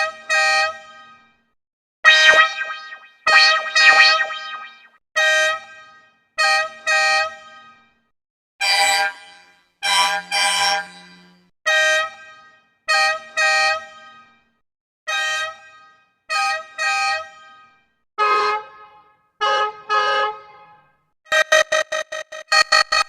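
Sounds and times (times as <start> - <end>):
bus horn honking: 18.2 - 20.8.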